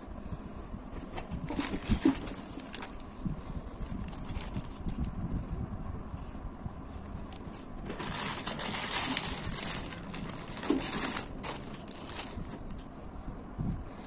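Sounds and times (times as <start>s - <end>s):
packaging crinkling: 1.5s - 3.0s, 7.3s - 12.6s.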